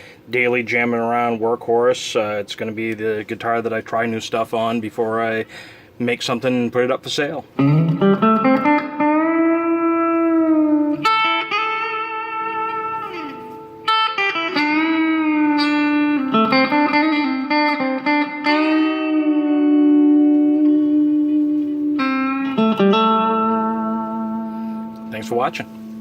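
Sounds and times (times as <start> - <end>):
electric guitar lead line: 7.5 - 26.0.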